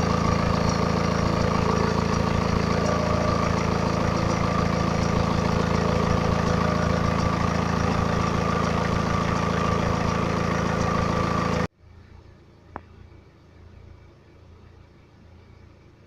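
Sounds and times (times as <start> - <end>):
high whine: 0.0 - 11.7
rapid engine ticking: 0.0 - 11.7
diesel engine idling: 0.0 - 16.0.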